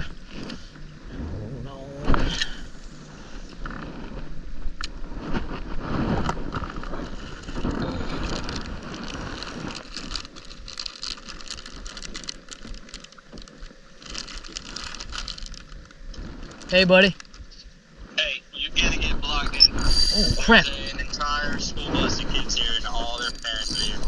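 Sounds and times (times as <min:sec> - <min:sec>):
rain on a kayak and water: 0:08.3 - 0:15.9.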